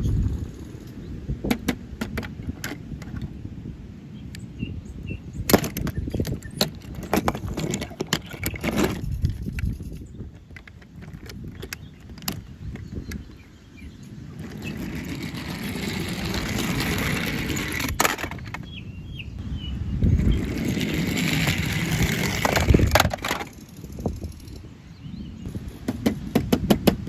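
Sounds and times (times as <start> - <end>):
sharp clicks and knocks: 0.8 - 3.3, 5.5 - 13.3
toy plastic wheels rolling: 5.5 - 13.3, 14.0 - 18.7, 20.2 - 24.7.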